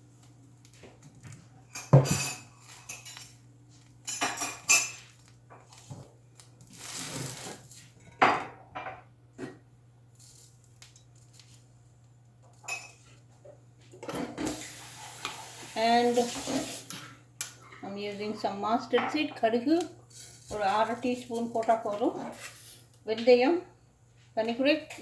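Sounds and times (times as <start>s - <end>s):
pots and pans clattering: 1.7s - 3.3s, 4.1s - 5.1s.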